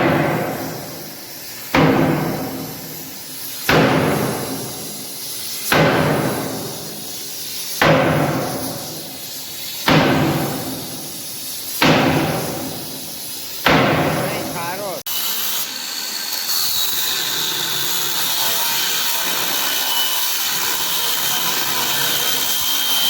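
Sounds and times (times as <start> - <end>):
hammer striking steel: 0.0 - 1.1, 1.7 - 5.0, 5.6 - 7.0, 7.7 - 9.0, 9.8 - 13.0, 13.6 - 14.8.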